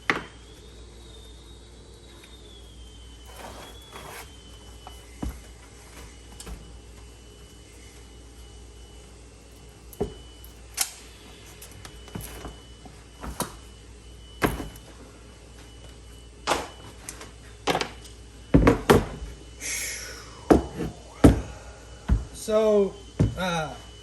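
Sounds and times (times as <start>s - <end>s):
scraping rustle: 3.2s - 4.8s.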